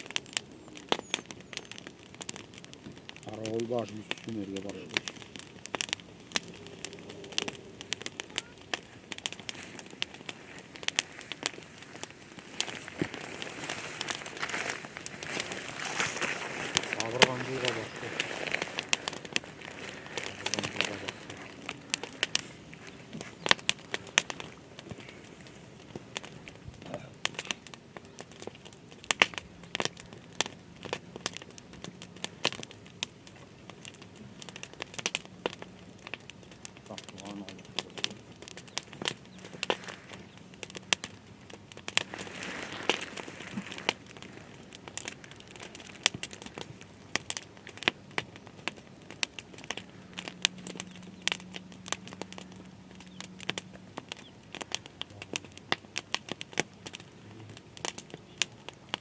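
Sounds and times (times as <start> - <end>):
hissing rustle: 0.0 - 59.0
sharp crackling and clicking: 0.0 - 59.0
faint voice: 8.2 - 8.9, 26.8 - 27.1.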